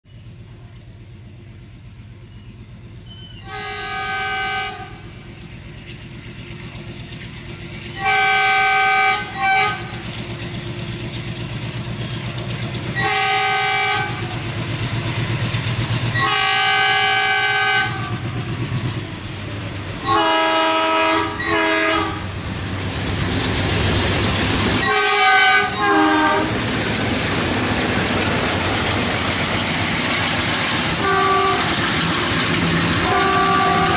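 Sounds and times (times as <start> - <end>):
diesel locomotive engines chugging: 0.1 - 33.9
locomotive horn blasts: 3.4 - 5.1, 8.0 - 10.0, 12.9 - 14.4, 16.1 - 18.2, 20.0 - 22.3, 24.8 - 26.6, 30.9 - 31.8, 33.0 - 33.9.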